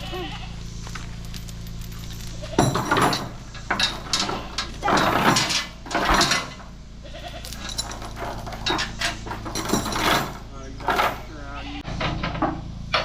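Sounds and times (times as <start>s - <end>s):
goats bleating: 0.0s - 0.7s, 6.9s - 7.6s, 11.3s - 11.9s.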